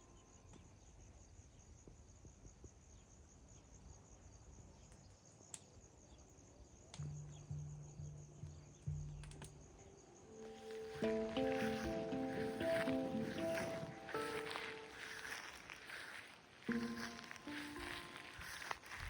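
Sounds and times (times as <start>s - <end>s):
insects chirping trill: 6.1s - 19.0s.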